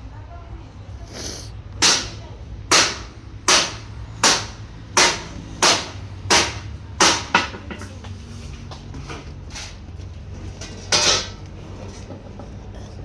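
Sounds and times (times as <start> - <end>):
hammer on metal: 1.8 - 8.0.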